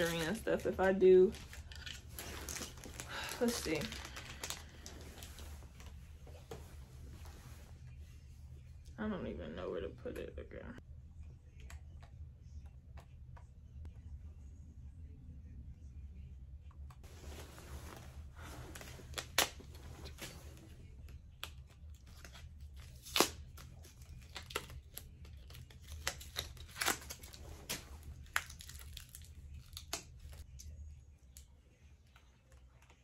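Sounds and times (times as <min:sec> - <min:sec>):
plastic packaging crinkling: 0:00.0 - 0:05.5.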